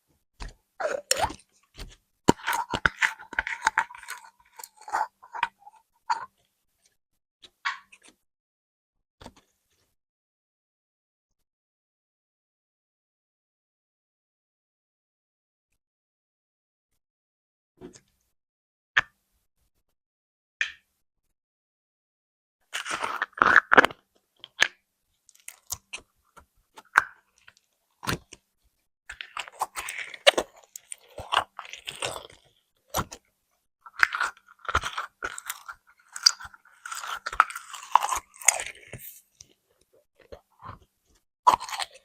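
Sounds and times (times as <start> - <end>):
slime crackling and popping: 34.0 - 39.2.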